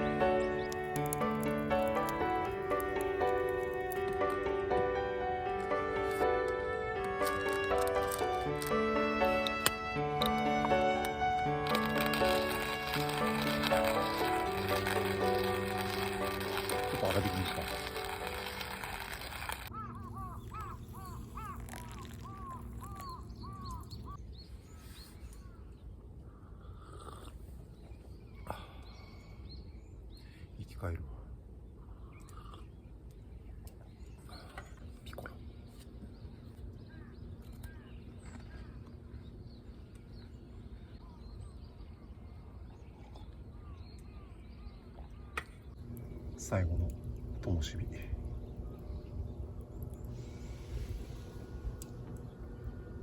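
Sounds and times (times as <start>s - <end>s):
crow cawing: 19.7s - 23.8s
faint bird chirps: 19.7s - 30.9s
low steady rumble: 45.8s - 53.0s.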